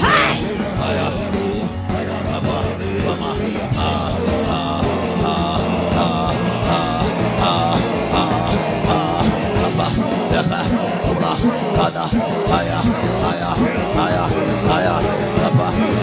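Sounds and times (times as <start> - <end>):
congregation praying aloud: 0.0 - 1.5
live church band music: 0.0 - 16.0.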